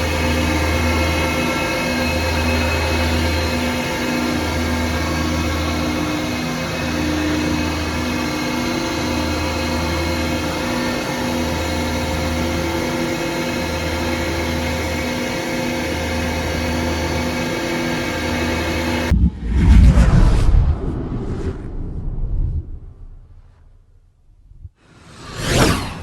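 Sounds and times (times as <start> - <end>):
low pulsing drone: 19.0 - 26.0.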